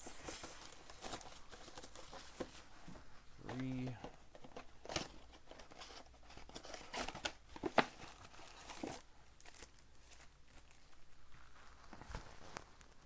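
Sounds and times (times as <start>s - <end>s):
plastic wrap crinkling and tearing: 4.8s - 13.0s.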